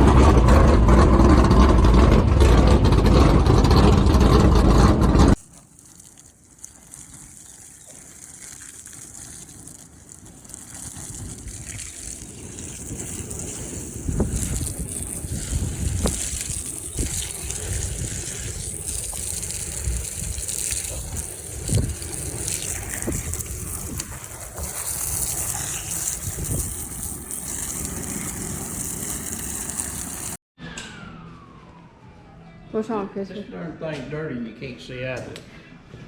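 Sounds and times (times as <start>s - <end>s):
pressure washer spraying water: 5.4s - 30.4s.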